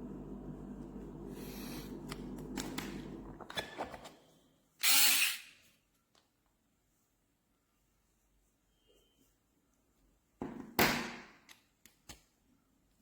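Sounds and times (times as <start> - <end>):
electric screwdriver whirring: 4.8 - 5.5.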